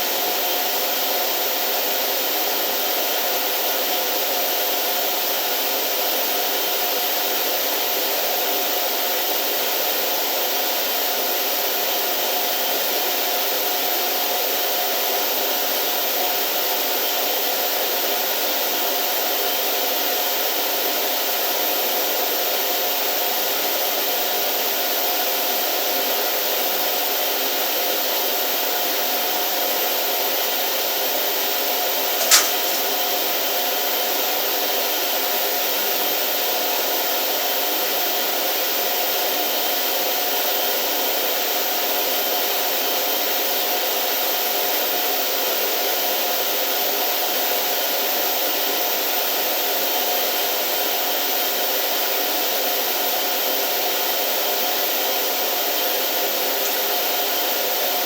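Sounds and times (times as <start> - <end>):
sharp click: 32.2 - 33.0.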